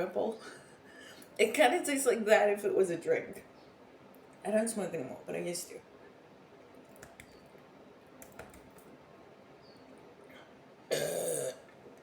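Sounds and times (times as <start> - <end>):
woman speaking: 0.0 - 0.5, 1.4 - 3.5, 4.4 - 5.9
faint clicks and taps: 6.9 - 9.0.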